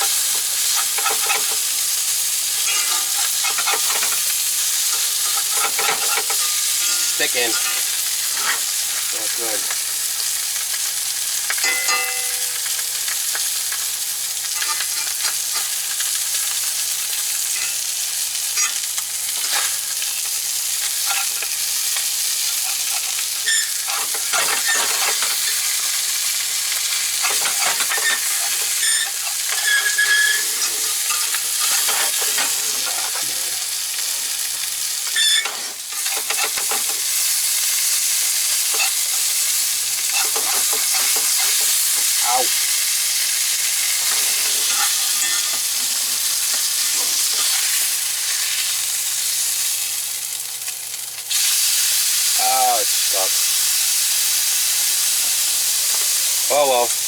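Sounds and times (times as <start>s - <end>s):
utensil scraping pan: 0.0s - 1.7s, 2.5s - 8.8s, 20.9s - 21.6s, 22.4s - 37.2s, 38.6s - 48.0s
fish frying in oil: 0.0s - 57.0s.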